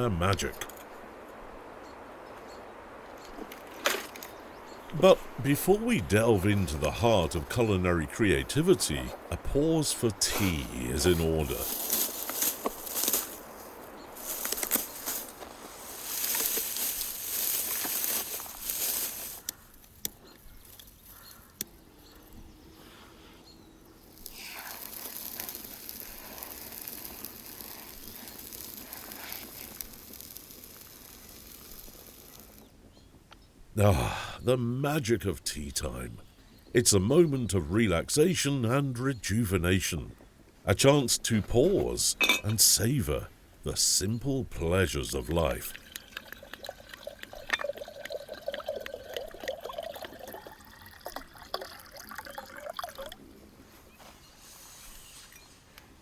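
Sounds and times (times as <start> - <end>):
campfire hissing and crackling: 8.1 - 19.9, 23.8 - 32.8
tea pouring into a cup: 45.4 - 53.3.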